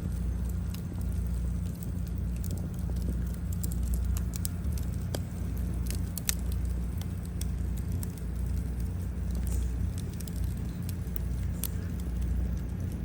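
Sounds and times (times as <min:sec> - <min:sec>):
fire low rumble: 0:00.0 - 0:13.0
wood fire crackling and popping: 0:00.0 - 0:13.0.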